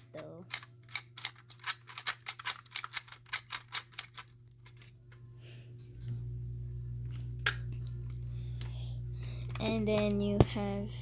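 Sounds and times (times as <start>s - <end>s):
low steady hum: 0.0s - 11.0s
plastic toy gun clicking: 0.2s - 4.3s.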